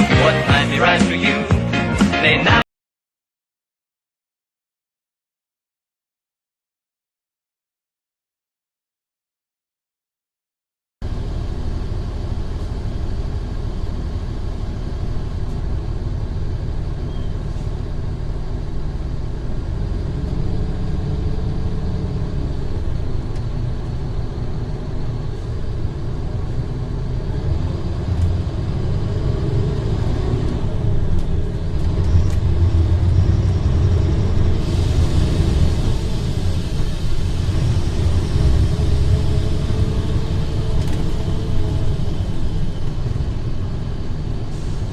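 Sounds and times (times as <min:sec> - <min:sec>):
bus diesel engine rumbling: 0:00.0 - 0:02.6, 0:11.0 - 0:44.9
high hiss: 0:34.4 - 0:40.0.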